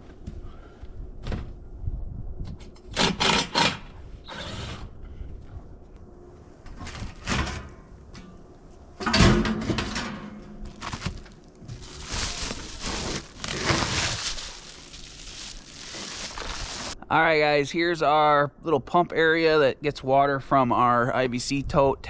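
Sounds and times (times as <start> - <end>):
scraping and crinkling: 10.6 - 17.0.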